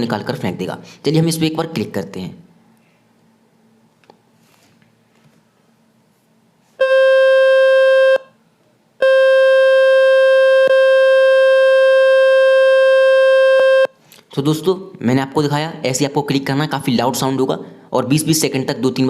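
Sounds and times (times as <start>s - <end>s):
loud buzzy tone: 6.8s - 8.4s, 9.0s - 14.0s.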